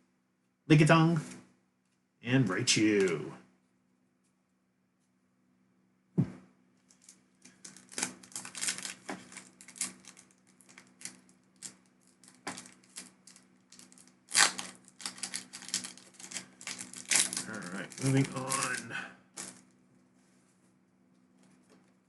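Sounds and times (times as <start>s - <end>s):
foil wrapper crinkling: 6.8s - 19.8s.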